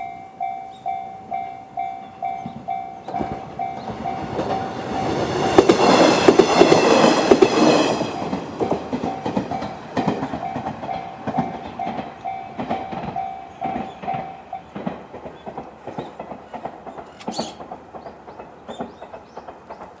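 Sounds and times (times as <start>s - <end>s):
level crossing warning bell: 0.0s - 5.8s, 8.0s - 14.8s
train wheels clacking over rail joints: 2.2s - 20.0s.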